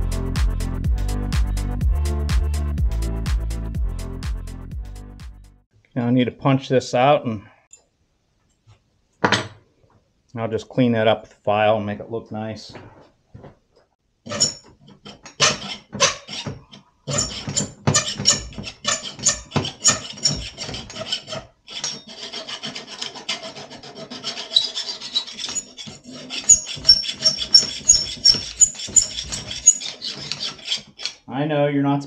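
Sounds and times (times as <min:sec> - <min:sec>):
hand file rasping on metal: 0:14.3 - 0:31.3.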